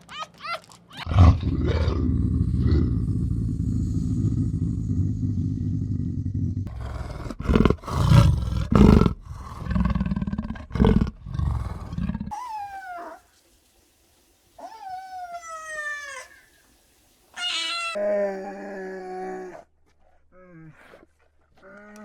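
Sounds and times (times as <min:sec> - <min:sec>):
tiger roaring and growling: 0:01.0 - 0:12.4
cat meowing: 0:17.4 - 0:18.0.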